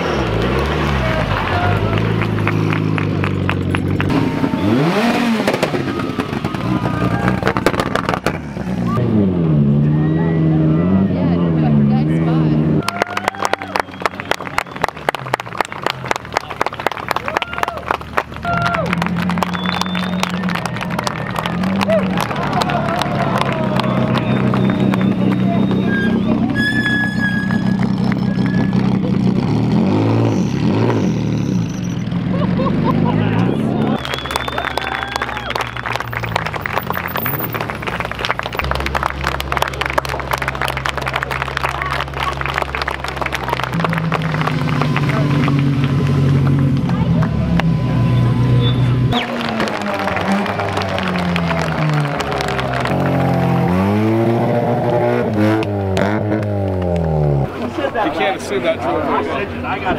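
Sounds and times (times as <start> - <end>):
rally car engine revving: 0.0 - 17.3, 17.9 - 59.9
sharp cracks and clatter: 7.3 - 8.4.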